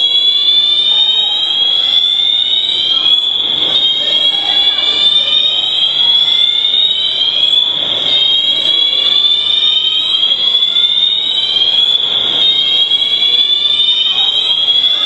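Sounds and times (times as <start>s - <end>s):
fire alarm rising tone: 0.0s - 15.0s.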